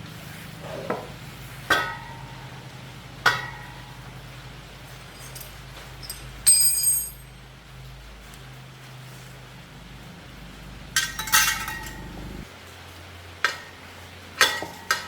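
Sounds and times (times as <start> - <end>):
steady low hum: 0.0 - 12.7
metal tools clanging: 4.9 - 7.4, 9.8 - 12.5.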